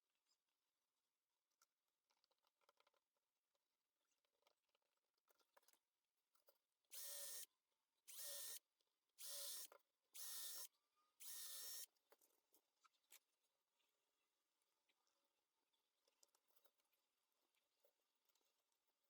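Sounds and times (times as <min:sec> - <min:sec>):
power drill bursts: 0:06.9 - 0:07.4, 0:08.1 - 0:08.6, 0:09.2 - 0:11.8.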